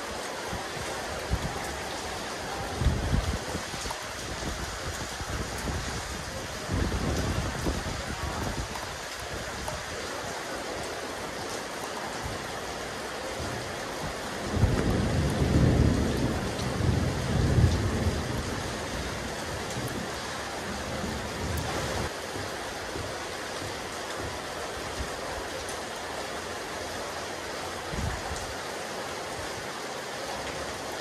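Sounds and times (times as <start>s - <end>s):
rain falling on a roof: 0.0s - 31.0s
thunder rumbling: 13.5s - 25.0s.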